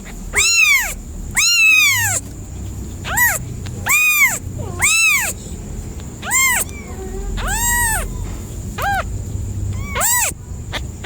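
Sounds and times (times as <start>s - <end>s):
kitten meowing: 0.3s - 2.2s, 3.0s - 5.4s, 6.2s - 8.2s, 8.8s - 9.1s, 9.7s - 11.0s.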